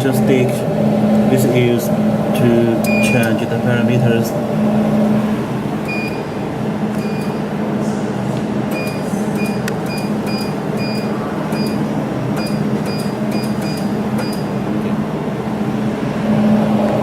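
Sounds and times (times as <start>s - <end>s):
welding machine humming: 0.0s - 17.0s
short high beeps: 7.0s - 7.4s, 8.7s - 11.8s, 12.4s - 14.5s.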